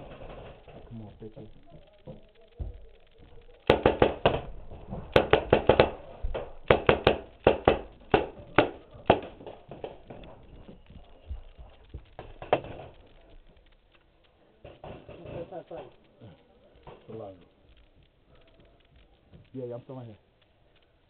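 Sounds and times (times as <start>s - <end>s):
paintball marker firing: 3.6s - 10.3s.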